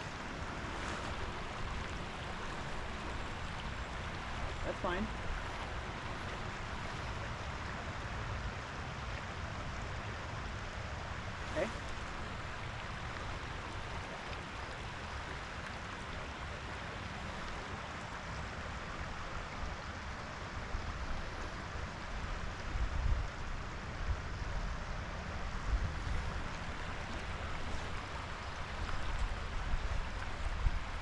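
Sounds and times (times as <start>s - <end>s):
river water rushing: 0.0s - 31.0s.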